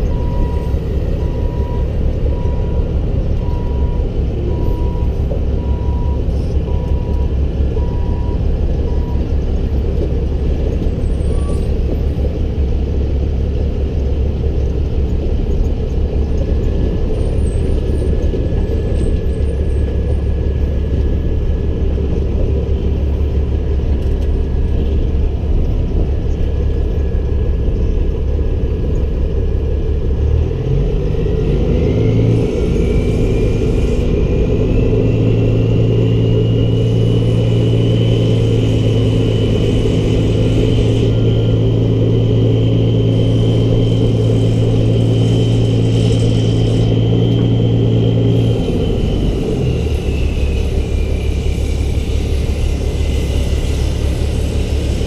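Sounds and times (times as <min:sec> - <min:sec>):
truck diesel engine running: 0:00.0 - 0:55.0
rising whine: 0:15.9 - 0:55.0.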